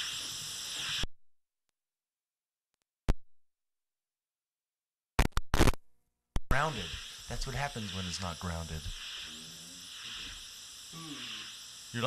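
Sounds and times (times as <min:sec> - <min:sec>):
electrical hiss and buzz: 0:00.0 - 0:01.1, 0:06.5 - 0:12.0
pop: 0:05.2 - 0:05.8.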